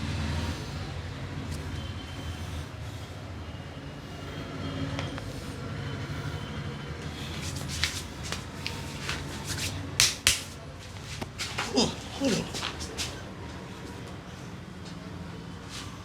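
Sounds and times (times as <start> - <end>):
hand slaps on head: 7.8 - 10.6.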